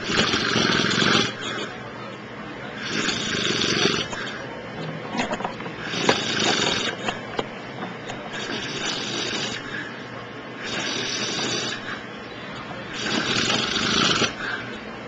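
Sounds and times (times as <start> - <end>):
man snoring: 0.0 - 1.4, 2.8 - 4.1, 5.9 - 7.0, 8.4 - 9.6, 10.6 - 11.8, 13.0 - 14.4.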